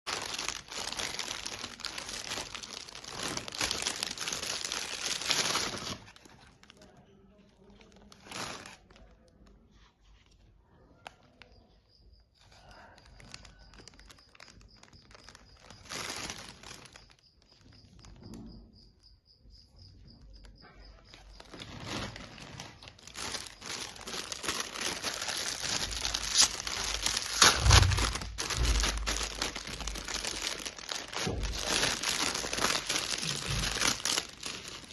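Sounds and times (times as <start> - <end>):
plastic packaging crinkling and tearing: 0.1 - 11.6, 12.4 - 18.4, 20.3 - 34.9.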